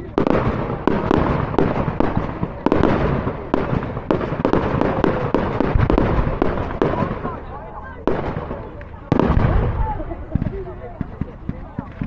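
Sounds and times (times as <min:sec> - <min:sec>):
fireworks bangs: 0:00.0 - 0:12.0
fireworks rumble: 0:00.0 - 0:12.0.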